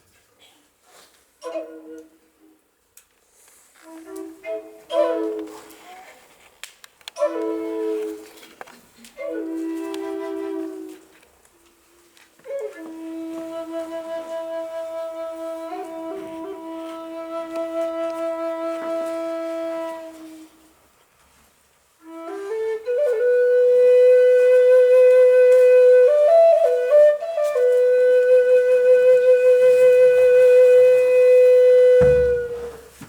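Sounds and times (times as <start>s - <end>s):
flute playing slowly: 1.4s - 2.6s, 3.8s - 6.3s, 7.1s - 20.8s, 22.0s - 33.0s
short low thump: 32.0s - 33.0s.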